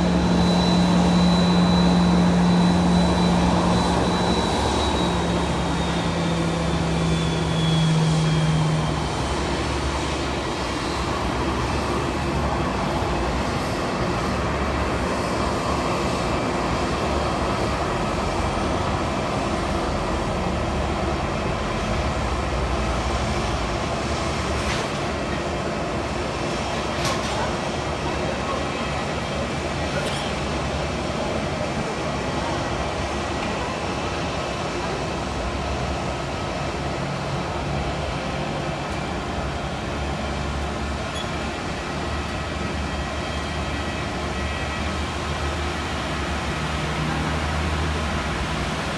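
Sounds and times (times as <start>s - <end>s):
high engine whine: 0.0s - 48.9s
jet engines roaring: 0.0s - 48.9s.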